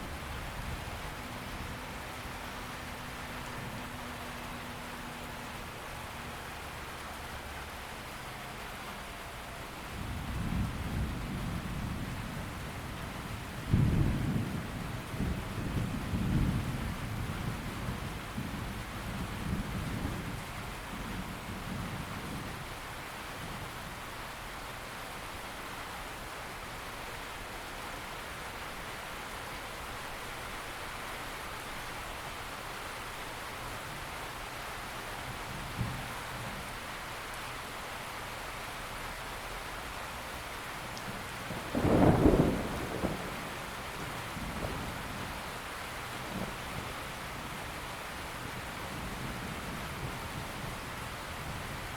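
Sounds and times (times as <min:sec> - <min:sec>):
steady rain: 0:00.0 - 0:51.9
thunder rumbling: 0:10.0 - 0:20.4, 0:41.1 - 0:45.4.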